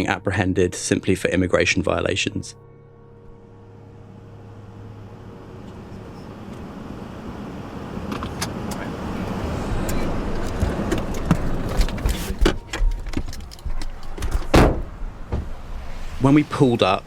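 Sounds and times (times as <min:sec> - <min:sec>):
car pulling up: 0:04.0 - 0:17.0
clicks and rattles: 0:10.4 - 0:14.5
loud thump: 0:14.2 - 0:15.8.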